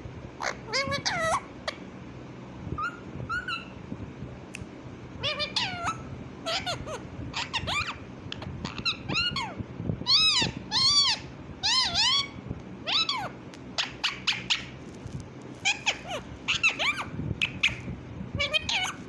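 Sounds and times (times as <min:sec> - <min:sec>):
parrot calling: 0:00.4 - 0:01.8, 0:02.8 - 0:03.8, 0:05.2 - 0:14.8, 0:15.6 - 0:19.0
parrot chirping sharply: 0:10.1 - 0:14.8, 0:15.6 - 0:19.0.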